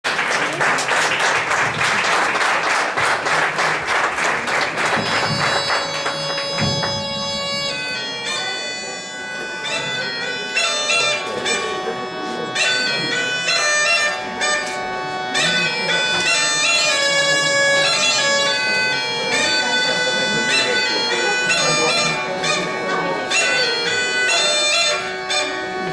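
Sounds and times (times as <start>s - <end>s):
bagpipes playing: 1.4s - 25.9s
rapid noisy beats: 2.8s - 7.9s.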